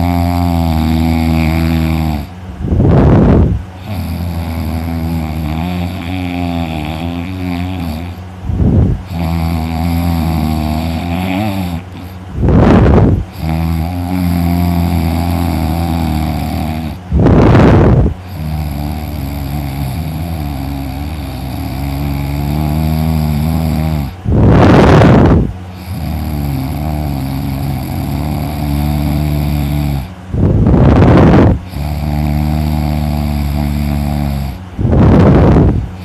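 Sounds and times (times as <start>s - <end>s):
person snoring loudly: 0.0s - 36.0s
steady low humming drone: 0.0s - 36.0s.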